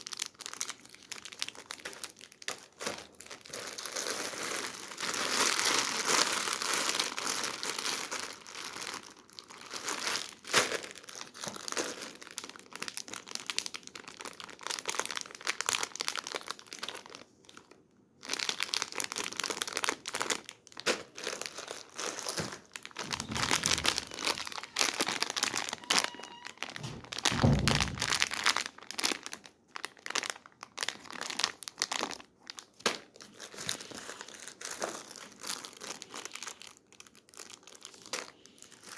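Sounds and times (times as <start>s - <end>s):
wrappers crinkling and rustling: 0.0s - 38.9s
dull thuds: 26.8s - 28.4s.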